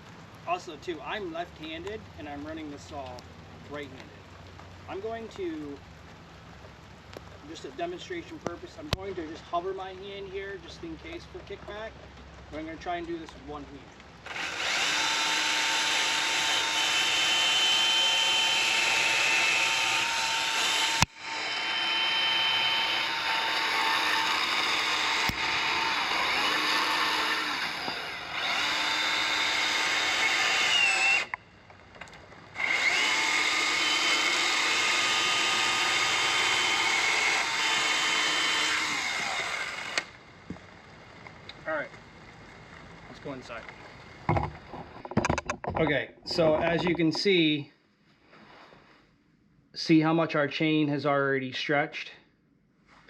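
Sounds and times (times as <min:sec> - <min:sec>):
electric chainsaw cutting wood: 0:14.2 - 0:31.4, 0:32.6 - 0:40.2.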